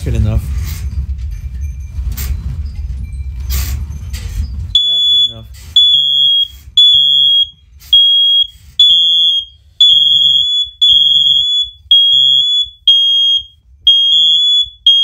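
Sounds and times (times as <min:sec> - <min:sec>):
smoke alarms beeping: 0:04.7 - 0:15.0.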